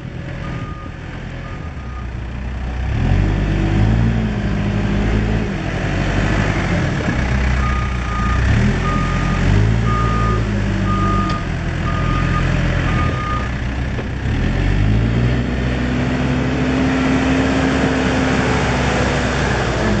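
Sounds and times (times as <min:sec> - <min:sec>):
diesel engine revving: 0:00.0 - 0:20.0
reversing alarm beeps: 0:00.4 - 0:00.9, 0:07.6 - 0:13.5.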